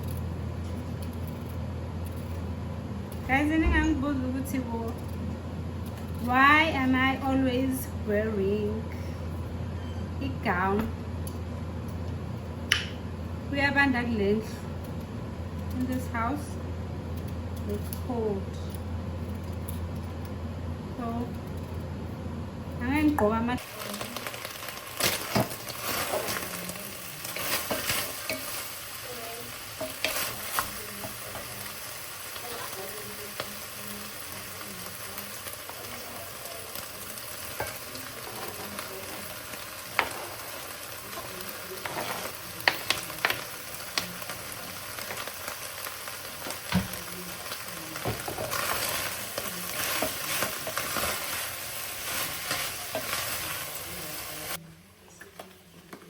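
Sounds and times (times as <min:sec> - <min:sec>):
food sizzling in a frying pan: 0:22.8 - 0:54.6.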